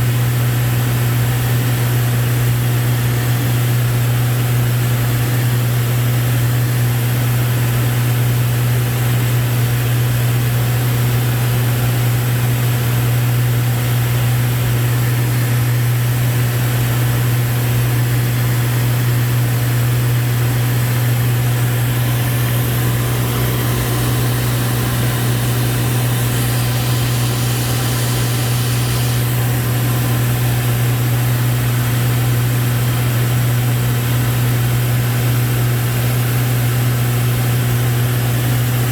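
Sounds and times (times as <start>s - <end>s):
airplane engine drone: 20.0s - 33.0s
air rushing: 21.7s - 31.1s.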